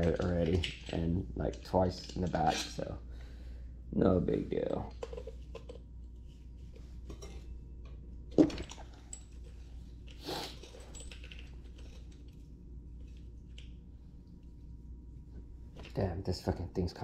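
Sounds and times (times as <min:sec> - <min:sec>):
metal tools clinking and knocking: 0:00.0 - 0:02.9, 0:10.5 - 0:12.3.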